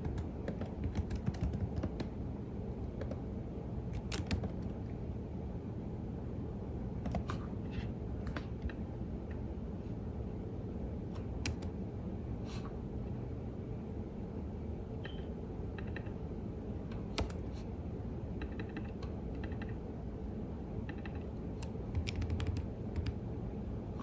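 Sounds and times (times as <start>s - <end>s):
keyboard typing: 0.0s - 2.2s, 3.0s - 3.3s, 3.9s - 4.9s, 7.0s - 7.4s, 11.2s - 11.8s, 17.0s - 17.6s, 18.4s - 19.8s, 20.8s - 23.2s
low background hum: 0.0s - 24.0s.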